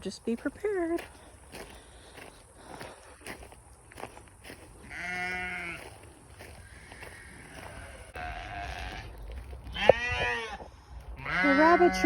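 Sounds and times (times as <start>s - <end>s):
sheep bleating: 4.9s - 6.0s, 6.6s - 9.1s, 9.7s - 10.6s, 11.2s - 12.0s.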